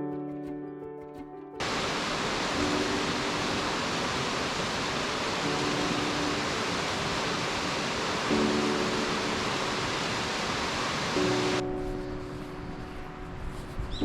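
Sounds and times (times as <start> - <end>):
soft music: 0.0 - 14.0
waterfall roar: 1.6 - 11.6.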